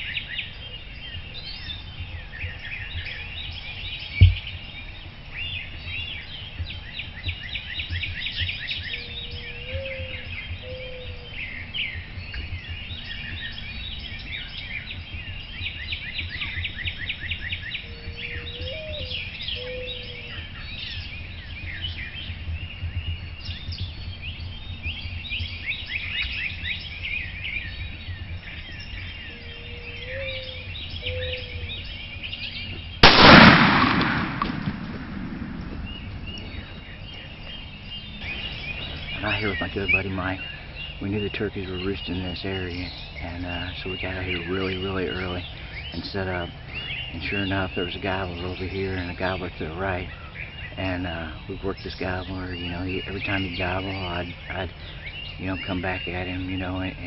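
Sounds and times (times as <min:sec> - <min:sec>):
short low bird calls: 0:00.0 - 0:57.0
songbirds chirping and trilling: 0:00.0 - 0:57.0
sharp low thump: 0:04.2 - 0:04.6, 0:33.0 - 0:36.8.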